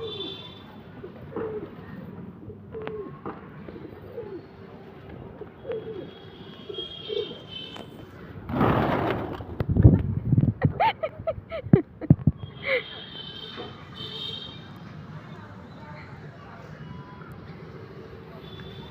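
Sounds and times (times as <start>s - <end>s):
pigeons cooing: 1.0s - 4.7s, 5.3s - 7.6s.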